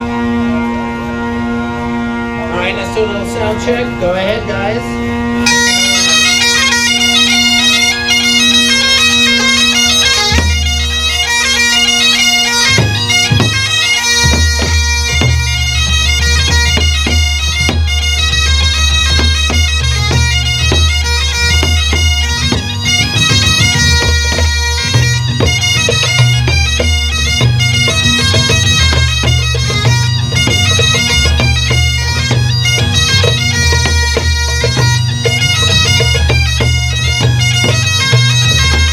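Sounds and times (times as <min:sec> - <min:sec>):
bagpipes playing a tune: 0:00.0 - 0:38.9
drum beating: 0:05.4 - 0:38.9.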